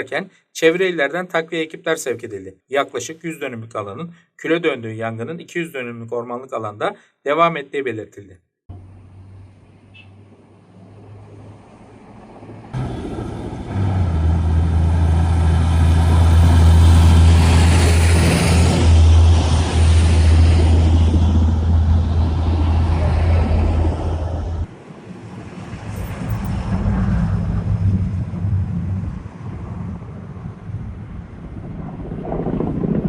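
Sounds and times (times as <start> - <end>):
heavy vehicle engine humming: 8.7 - 24.7
quiet rumble: 18.8 - 24.7, 25.6 - 33.0.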